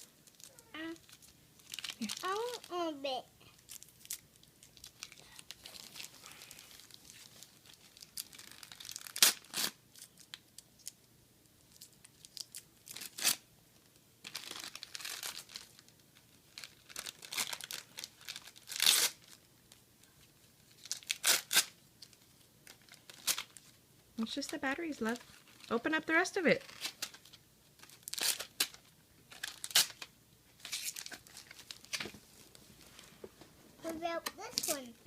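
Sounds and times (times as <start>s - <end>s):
wrapping paper crinkling: 0.0s - 2.8s, 3.5s - 11.0s, 11.7s - 13.4s, 14.2s - 33.1s
paper ripping: 8.3s - 9.8s, 18.4s - 19.3s, 20.9s - 21.7s, 29.4s - 32.1s.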